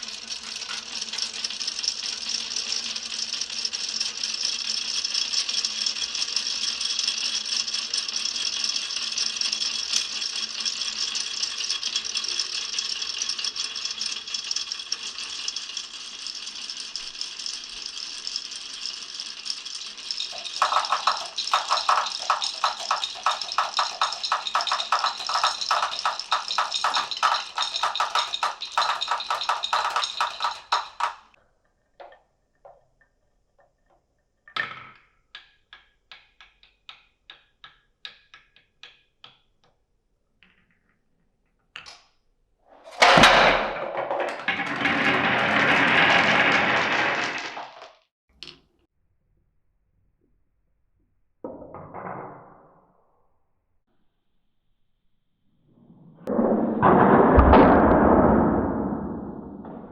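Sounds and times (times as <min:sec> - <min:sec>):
marbles clattering on wooden run: 0:00.0 - 0:31.4, 0:43.0 - 0:48.0
single marbles clicking: 0:20.1 - 0:31.2.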